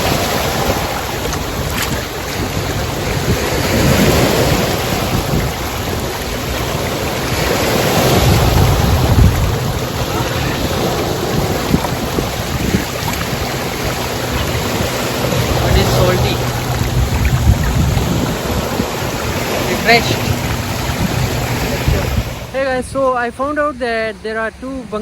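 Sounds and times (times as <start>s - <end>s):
water rushing: 0.0s - 25.0s
wind buffeting microphone: 0.0s - 25.0s.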